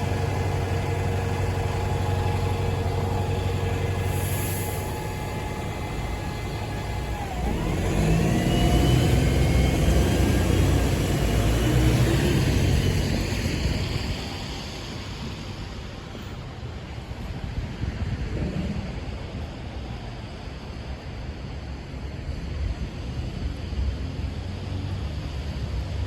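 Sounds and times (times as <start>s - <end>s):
drivetrain whine: 0.0s - 17.7s
bus engine rumble: 0.0s - 26.0s.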